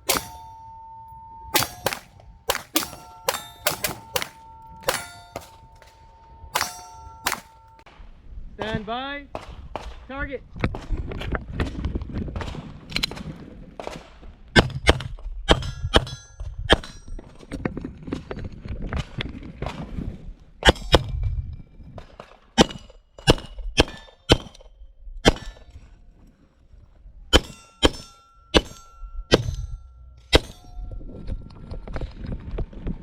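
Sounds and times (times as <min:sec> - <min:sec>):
gunshots: 0:00.0 - 0:00.5, 0:01.6 - 0:05.9, 0:06.6 - 0:07.7
steel targets ringing: 0:00.0 - 0:07.8, 0:27.4 - 0:31.1.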